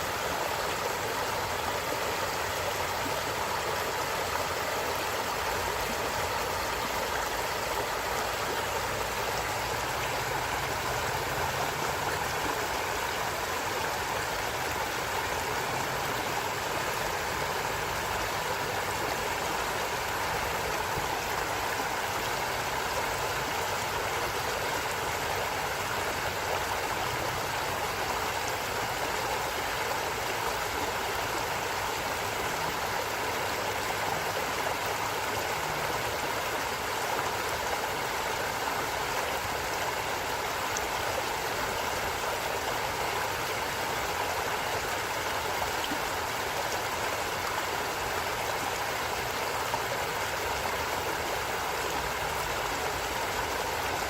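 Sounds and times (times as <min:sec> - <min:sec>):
water gurgling over rocks: 0:00.0 - 0:54.0.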